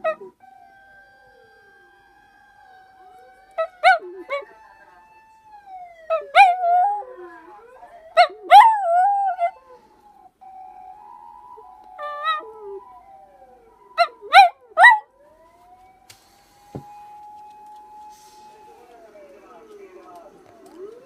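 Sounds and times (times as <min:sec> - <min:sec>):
fire engine siren wailing: 0:00.0 - 0:21.0
dog howling and yelping: 0:02.6 - 0:04.5, 0:06.1 - 0:10.2.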